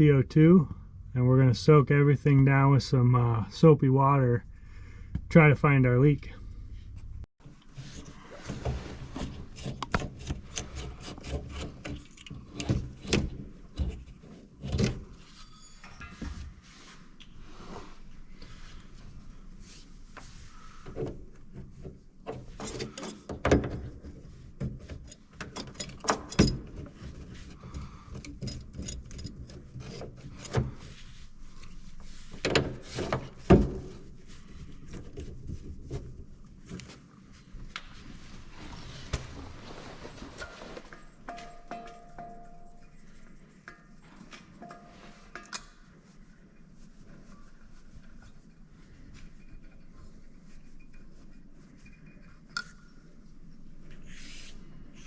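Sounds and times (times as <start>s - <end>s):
rubbing and scraping: 7.6s - 25.8s, 26.7s - 41.3s.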